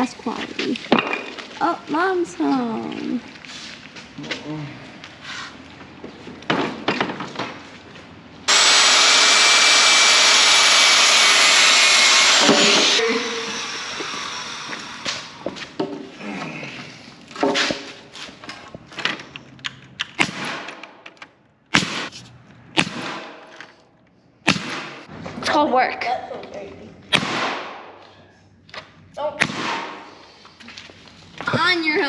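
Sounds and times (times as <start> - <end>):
power saw whining: 8.5 - 15.5.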